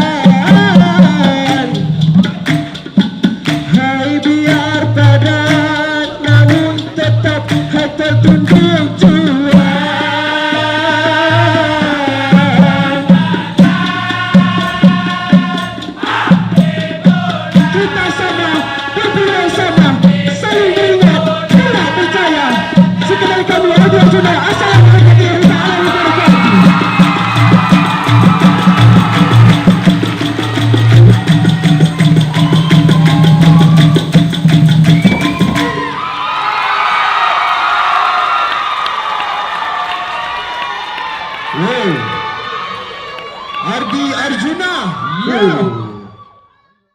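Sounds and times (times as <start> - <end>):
male chorus singing in unison: 0.0 - 1.9, 3.6 - 34.2
fast percussion: 0.0 - 46.0.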